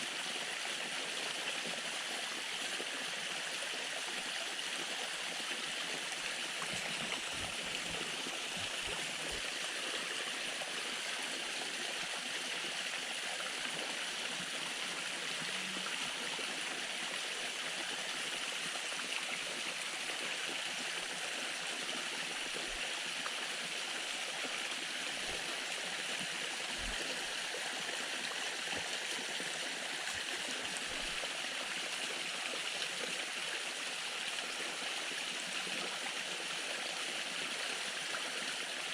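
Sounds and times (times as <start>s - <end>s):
small waterfall splashing: 0.0s - 38.9s.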